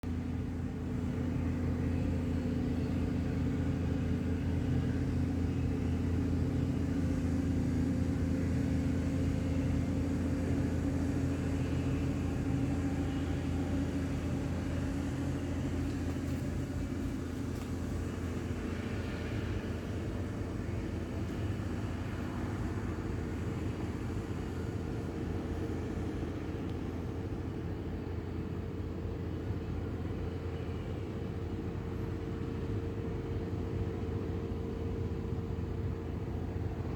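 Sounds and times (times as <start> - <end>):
engine droning hum: 0.0 - 36.9.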